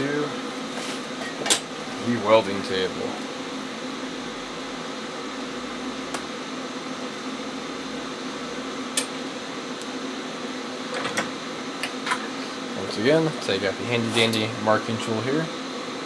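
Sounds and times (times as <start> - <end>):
mechanical fan hum: 0.0 - 16.0.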